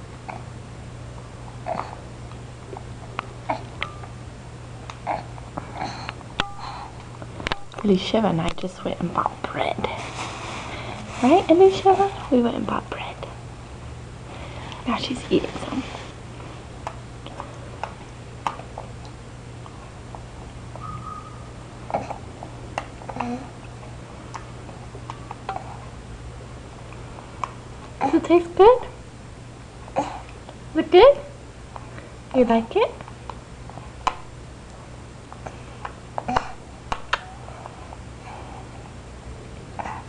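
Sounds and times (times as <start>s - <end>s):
steady low hum: 0.0s - 40.0s
high steady tone: 20.8s - 21.6s.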